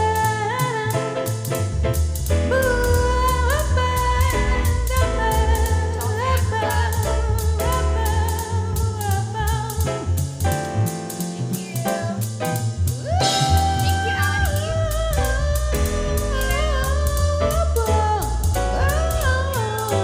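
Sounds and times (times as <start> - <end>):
bass: 0.0 - 20.0
steady drum beat: 0.0 - 20.0
person singing: 11.4 - 20.0.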